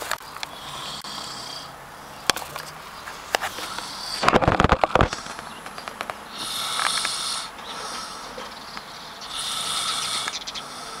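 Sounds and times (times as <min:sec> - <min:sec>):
person snoring: 0:00.5 - 0:02.1, 0:03.5 - 0:04.3, 0:06.3 - 0:08.4, 0:09.3 - 0:11.0.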